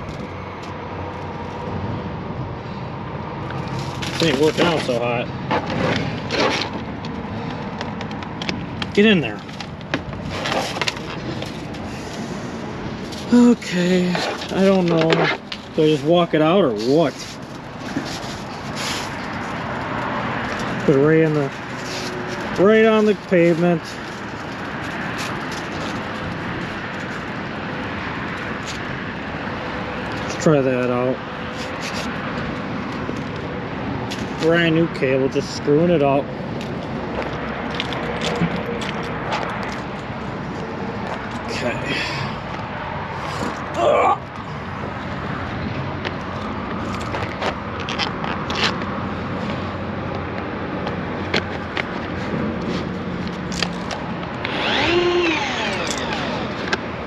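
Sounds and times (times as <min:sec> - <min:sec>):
distant traffic rush: 0:00.0 - 0:57.0
steel cable scraping pavement: 0:03.4 - 0:07.6, 0:08.8 - 0:28.9, 0:30.0 - 0:33.3, 0:46.3 - 0:49.8, 0:51.2 - 0:57.0
motor hum: 0:54.4 - 0:56.8.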